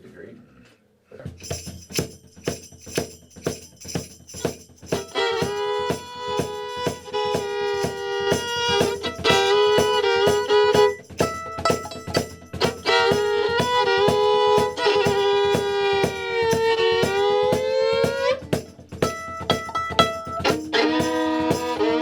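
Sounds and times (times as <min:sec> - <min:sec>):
jingling percussion beat: 0:01.3 - 0:22.0
fiddle playing a tune: 0:04.4 - 0:22.0.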